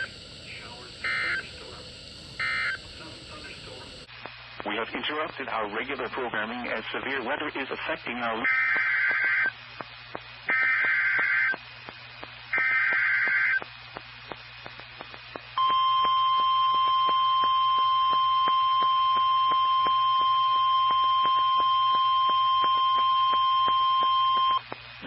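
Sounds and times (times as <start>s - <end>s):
screechy two-tone data bursts: 0.0s - 1.7s, 2.4s - 2.9s, 8.4s - 9.6s, 10.5s - 13.7s, 14.6s - 24.6s
steady warning alarm tone: 0.0s - 4.1s, 8.4s - 9.5s, 10.5s - 11.6s, 12.5s - 13.7s, 14.7s - 24.6s
faint regular clicking: 9.1s - 23.4s.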